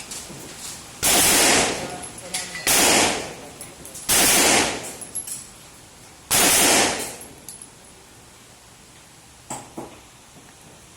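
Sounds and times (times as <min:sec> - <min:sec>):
pistol shot: 0:01.0 - 0:01.9, 0:02.7 - 0:03.4, 0:04.1 - 0:05.0, 0:06.3 - 0:07.2.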